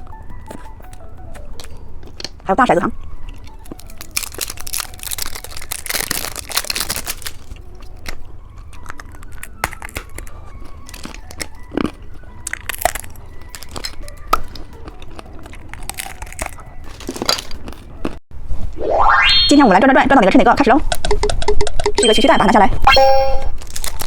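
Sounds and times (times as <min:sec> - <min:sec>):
plastic wrappers crinkling and tearing: 0:03.3 - 0:18.1, 0:23.6 - 0:24.0.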